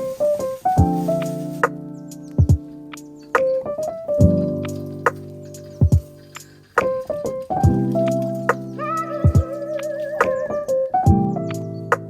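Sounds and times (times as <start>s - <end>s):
held music chord: 4.2s - 10.9s
low thumps: 6.8s - 11.3s.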